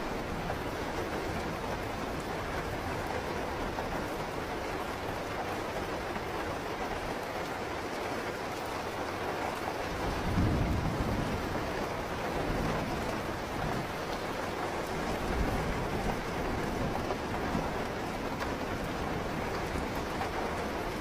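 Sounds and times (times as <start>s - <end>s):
steady rain falling: 0.0s - 21.0s
low roll of thunder: 9.9s - 21.0s.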